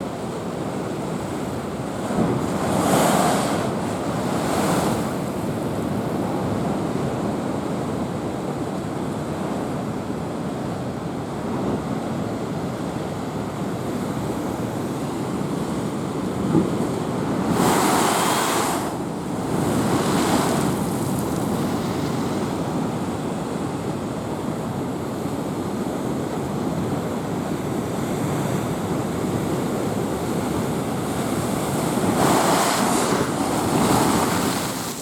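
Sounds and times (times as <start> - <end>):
waves crashing on breakwater: 0.1 - 7.6, 13.5 - 35.0
wind buffeting microphone: 13.4 - 35.0.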